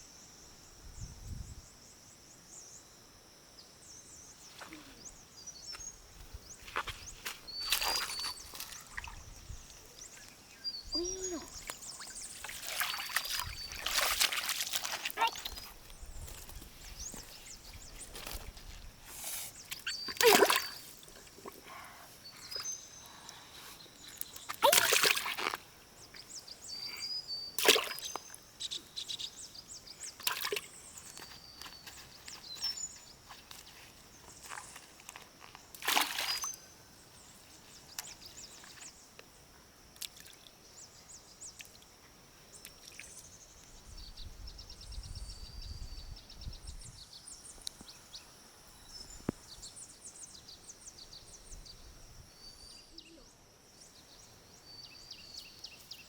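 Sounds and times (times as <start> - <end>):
water sloshing and splashing: 7.6 - 9.4, 11.5 - 15.8, 19.7 - 21.6, 24.5 - 25.6, 27.6 - 28.2, 30.2 - 30.8, 35.7 - 36.6
thin high chirps: 19.6 - 20.8.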